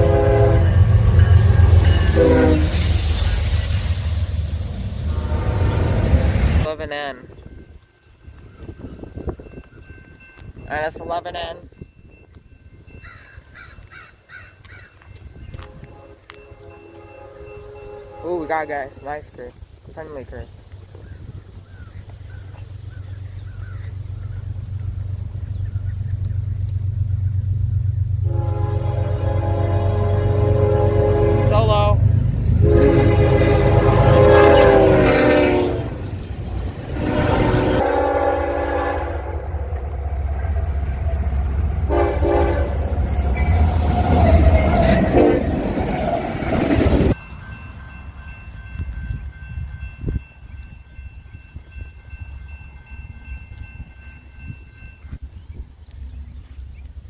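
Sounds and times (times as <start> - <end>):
locomotive air horn chord: 0.0 - 6.7, 15.6 - 18.7, 28.2 - 36.2, 36.8 - 39.7, 41.7 - 45.6
diesel locomotive rumbling: 0.0 - 13.9, 14.5 - 57.0.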